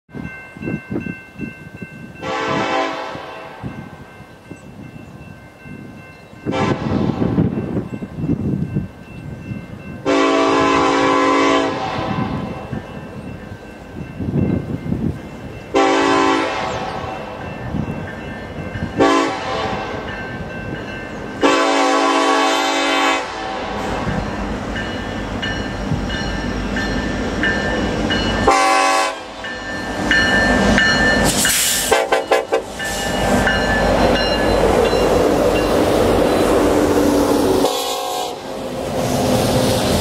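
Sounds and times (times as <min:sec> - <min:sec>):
diesel locomotives rumbling past: 0:00.1 - 0:40.0
train wheel noise: 0:00.2 - 0:40.0
locomotive air horn blasts: 0:02.2 - 0:03.7, 0:06.5 - 0:07.4, 0:10.0 - 0:12.6, 0:15.8 - 0:17.1, 0:19.0 - 0:20.1, 0:21.4 - 0:24.0, 0:28.4 - 0:29.4, 0:31.5 - 0:33.1, 0:37.6 - 0:38.5.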